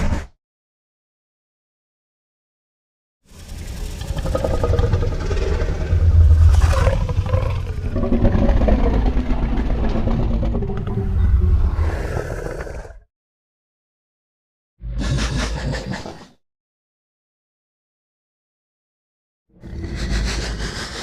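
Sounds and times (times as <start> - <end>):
deep rumbling growl-roar: 3.3 - 13.1, 14.8 - 16.4, 19.5 - 21.0.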